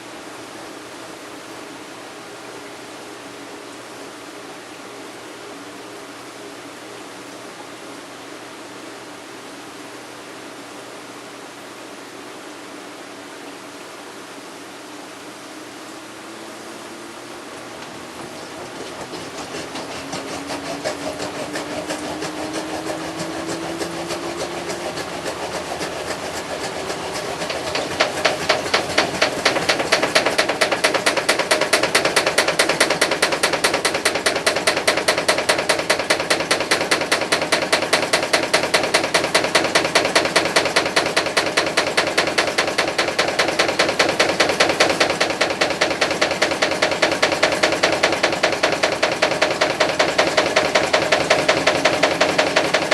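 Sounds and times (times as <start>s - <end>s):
washing machine motor whine: 0.0s - 52.9s
rapid regular knocking: 18.0s - 52.9s.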